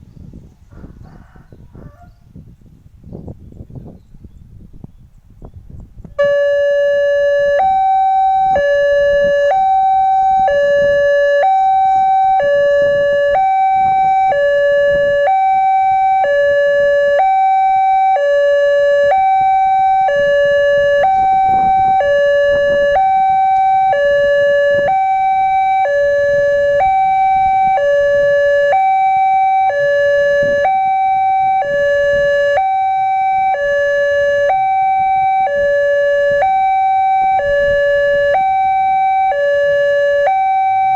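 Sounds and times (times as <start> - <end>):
level crossing two-tone alarm: 6.2 - 40.9.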